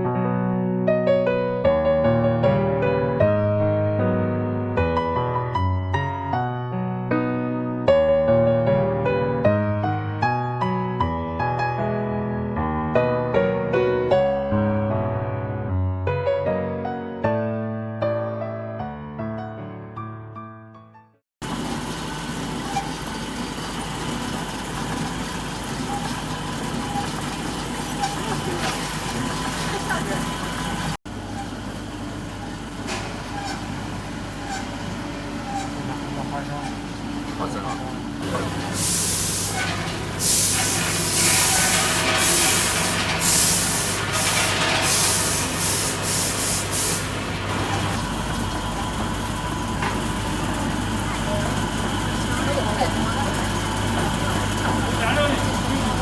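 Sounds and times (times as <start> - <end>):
milling machine humming: 21.4 - 56.0
bursts of hissing: 38.3 - 47.9.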